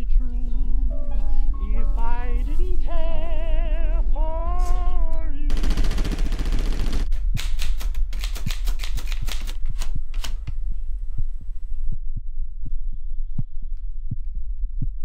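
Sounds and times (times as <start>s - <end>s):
deep steady hum: 0.0s - 8.7s, 9.6s - 15.0s
typewriter keys clacking: 7.4s - 10.4s
low heartbeat-like thuds: 9.6s - 15.0s.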